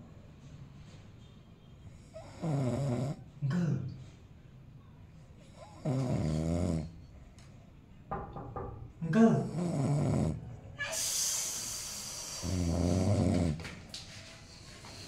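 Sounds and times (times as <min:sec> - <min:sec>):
man snoring: 0:02.2 - 0:03.2, 0:05.6 - 0:06.9, 0:09.4 - 0:10.4, 0:11.6 - 0:13.6.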